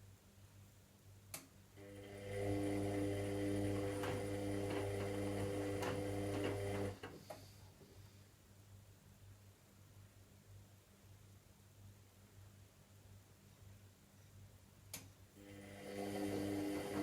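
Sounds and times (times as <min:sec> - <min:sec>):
washing machine motor whining: 0:01.8 - 0:07.0, 0:15.4 - 0:17.0.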